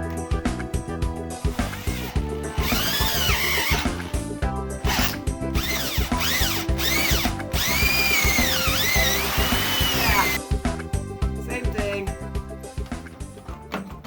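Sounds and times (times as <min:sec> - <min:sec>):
background music with beat: 0:00.0 - 0:14.0
power drill drilling metal: 0:01.5 - 0:10.4.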